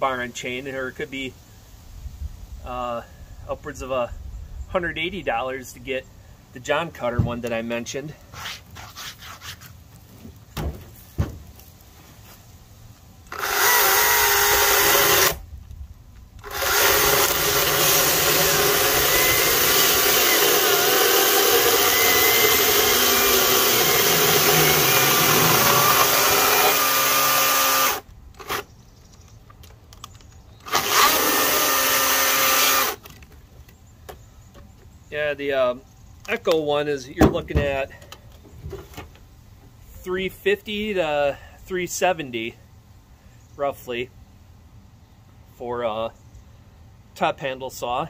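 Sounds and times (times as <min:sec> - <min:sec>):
electric chainsaw running: 0:13.3 - 0:15.4, 0:16.4 - 0:28.6, 0:30.7 - 0:33.0.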